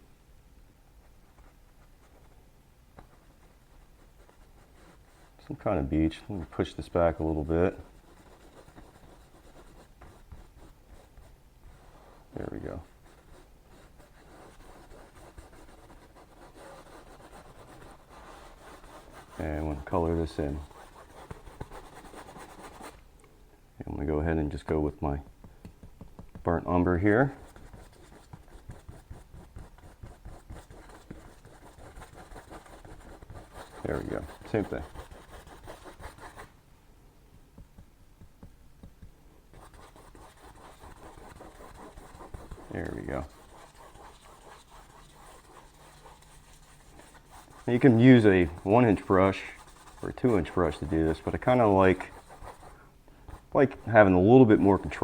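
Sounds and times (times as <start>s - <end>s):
brush scratching on canvas: 3.0s - 23.0s, 25.8s - 36.5s, 37.6s - 55.0s
soft taps: 25.4s - 26.5s, 37.3s - 39.2s.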